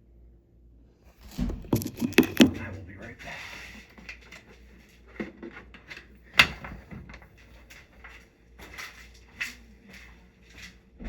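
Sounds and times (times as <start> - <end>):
objects clicking and knocking: 1.2 - 3.2.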